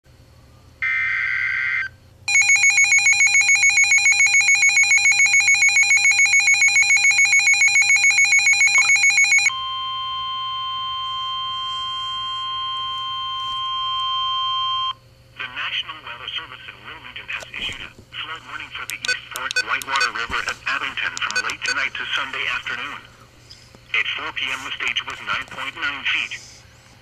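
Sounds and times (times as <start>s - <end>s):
pulsing electronic alarm: 0.8s - 15.0s
steady warning tone: 2.3s - 15.0s, 21.1s - 22.9s.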